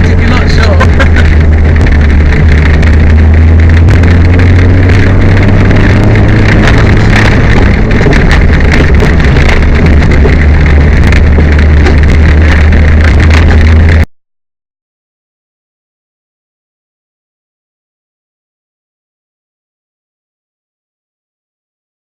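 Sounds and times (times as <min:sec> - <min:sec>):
car engine and road drone: 0:00.0 - 0:14.1.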